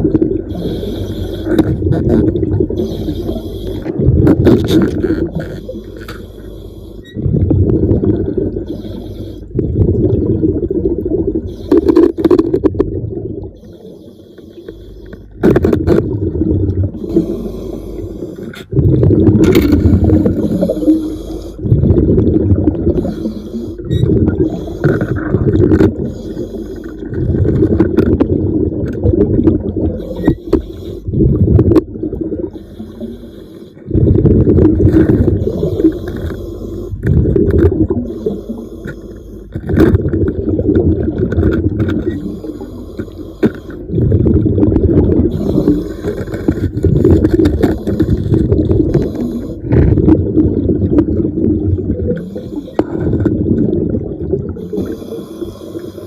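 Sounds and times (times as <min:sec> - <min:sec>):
exhaled bubbles rumbling underwater: 0:00.0 - 0:56.0.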